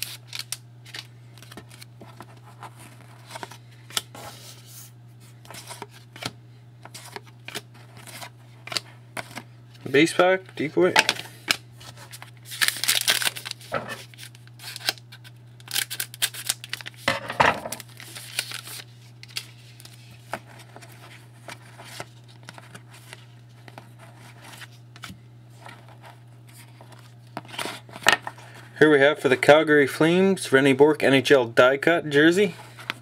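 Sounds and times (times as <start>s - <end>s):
wrapper tearing and crinkling: 0.0s - 1.9s, 11.5s - 20.1s.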